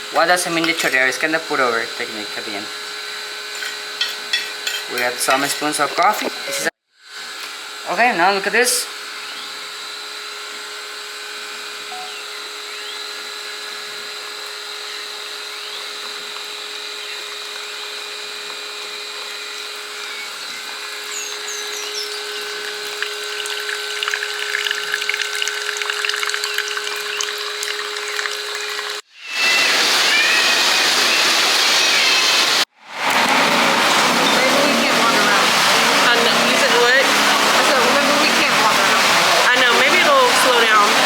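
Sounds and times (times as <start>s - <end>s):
small electric motor whining: 8.8s - 41.0s
rushing water: 20.7s - 29.0s.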